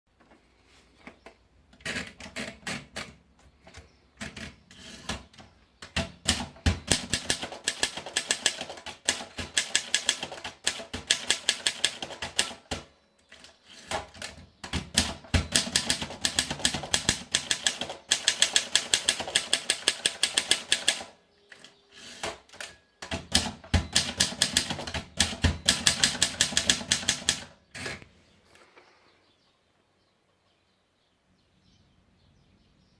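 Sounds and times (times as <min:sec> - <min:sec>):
typewriter keys clacking: 0:05.9 - 0:12.7, 0:14.0 - 0:27.5.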